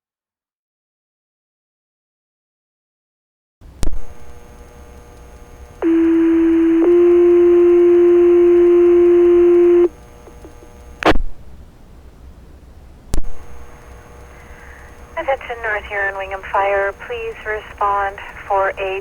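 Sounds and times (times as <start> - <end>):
radio hiss: 3.8 - 11.2, 13.2 - 19.0
two-tone pager alert: 5.8 - 9.9
radio squelch burst: 14.2 - 19.0.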